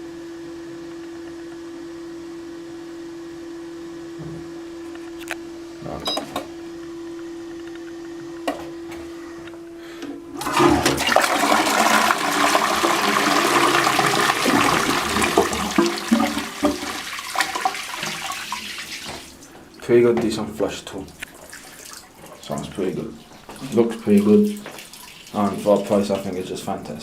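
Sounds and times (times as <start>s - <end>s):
toilet flushing water rush: 10.3s - 19.5s, 21.0s - 26.5s.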